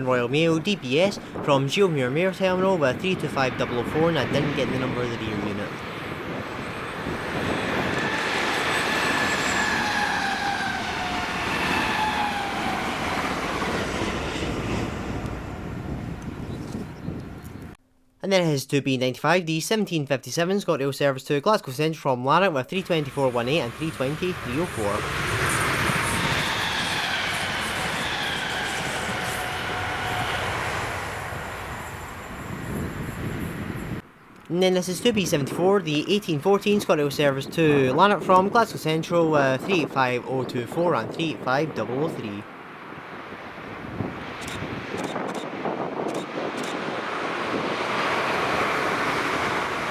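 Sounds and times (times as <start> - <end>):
train passing at speed: 3.4 - 16.6, 22.8 - 34.0, 42.5 - 49.9.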